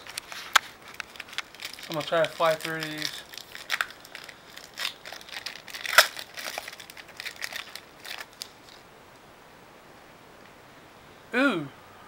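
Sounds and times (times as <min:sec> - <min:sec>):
wrapper crinkling and tearing: 0:00.0 - 0:08.9.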